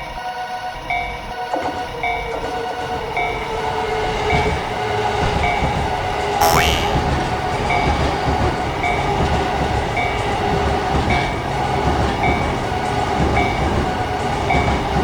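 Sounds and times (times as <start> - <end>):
train running on rails: 7.6 - 15.0.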